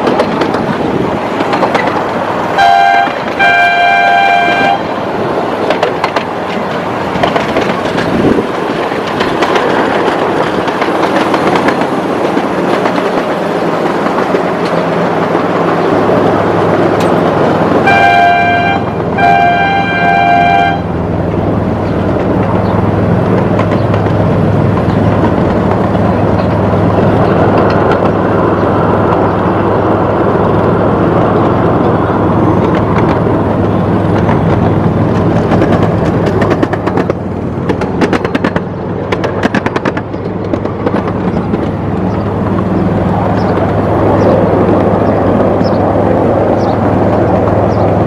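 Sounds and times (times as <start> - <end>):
wheels clicking on track: 0.0 - 48.0
train horn toot: 2.6 - 4.9, 17.8 - 20.9.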